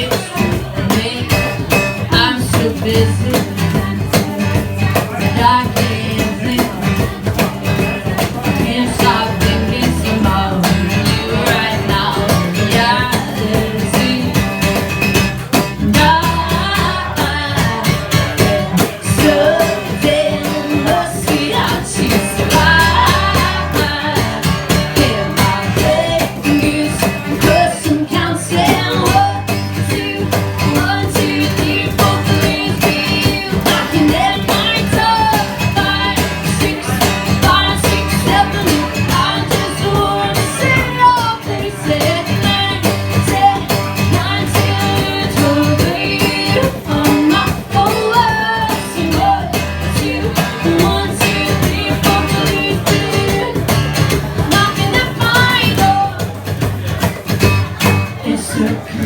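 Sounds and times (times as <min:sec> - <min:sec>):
pop-rock band playing: 0:00.0 - 0:59.0
person singing: 0:15.6 - 0:56.4, 0:58.1 - 0:59.0.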